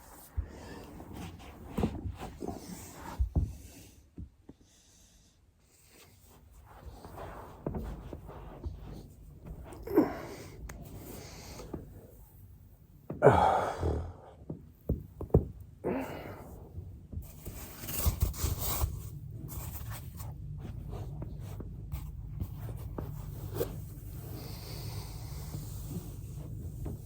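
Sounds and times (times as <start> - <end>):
person exhaling hard: 13.2 - 14.3
low steady rumble: 16.1 - 27.0.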